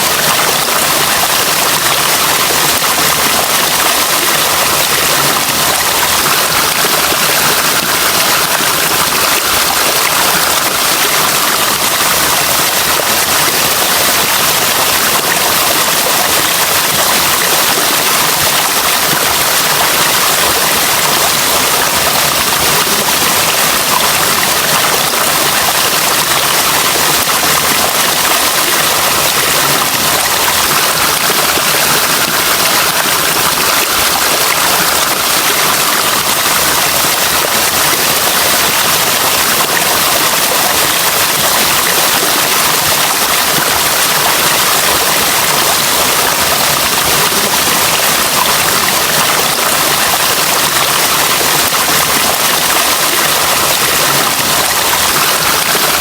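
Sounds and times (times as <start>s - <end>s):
running water rushing: 0.0s - 56.0s.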